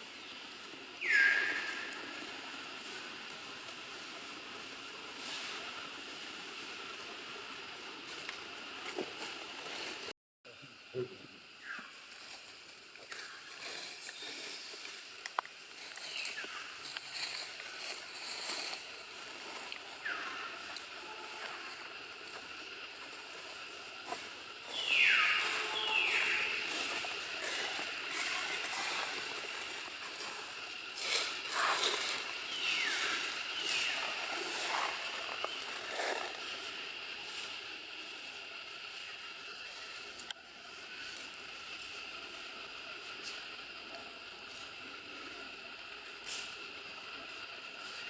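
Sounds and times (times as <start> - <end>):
steady high drone: 15.8 - 48.0.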